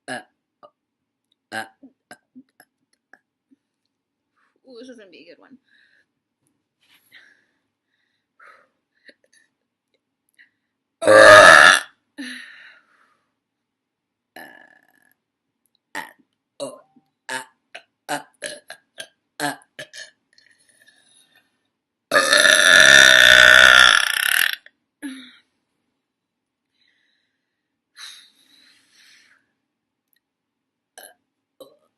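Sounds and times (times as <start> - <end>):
woman burping: 11.0 - 12.3, 14.4 - 15.1, 16.0 - 17.5, 18.1 - 20.1, 22.1 - 25.4.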